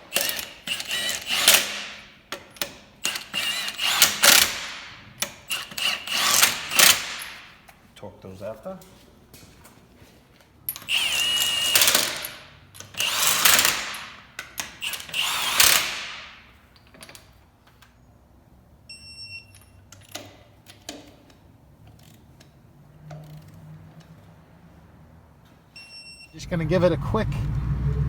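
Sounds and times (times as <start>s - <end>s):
impact wrench spinning lug nuts: 0.1s - 7.4s, 10.8s - 16.4s.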